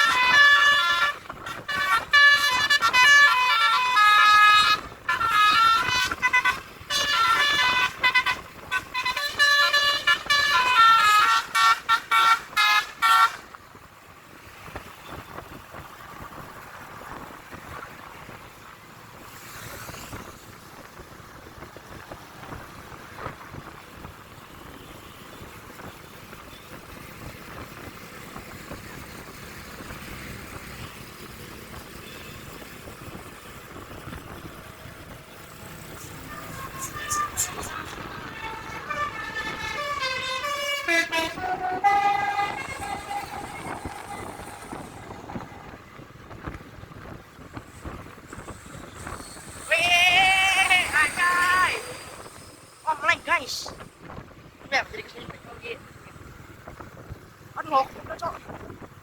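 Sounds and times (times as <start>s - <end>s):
bus air horn playing a tune: 0.0s - 13.6s, 35.5s - 46.0s, 47.8s - 52.6s
road traffic noise: 0.0s - 59.0s.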